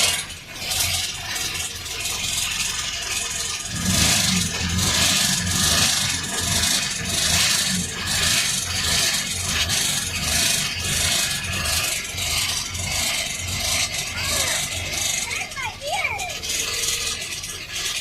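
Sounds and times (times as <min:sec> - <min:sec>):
rhythmic scraping with thumps: 0:00.0 - 0:18.0.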